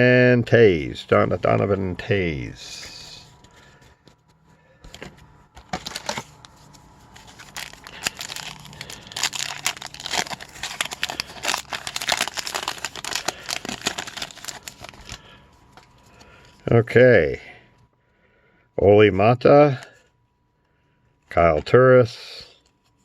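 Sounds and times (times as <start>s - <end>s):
plastic wrapper crinkling: 5.6s - 15.9s.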